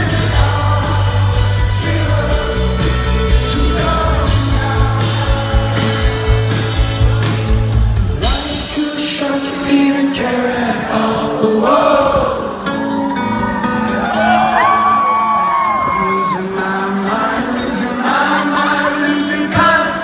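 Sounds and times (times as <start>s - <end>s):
bass guitar line: 0.0s - 9.7s
drums: 0.0s - 12.5s
person singing: 0.0s - 20.0s.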